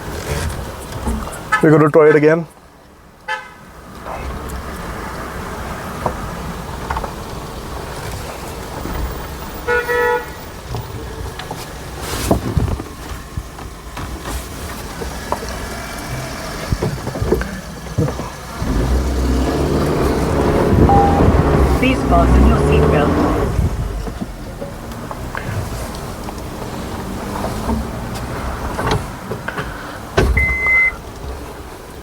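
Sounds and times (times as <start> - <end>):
tyres knocking and crunching over rocks: 6.0 - 9.6, 10.6 - 20.4
engine running under load: 14.4 - 31.0
short double beep: 20.8 - 23.2, 30.4 - 31.0.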